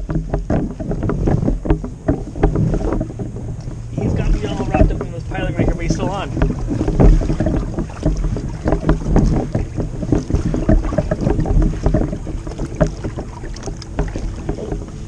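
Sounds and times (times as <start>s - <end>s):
knocks and handling noise: 0.0s - 3.8s
water splashing and sloshing: 0.0s - 15.0s
wind buffeting microphone: 0.0s - 15.0s.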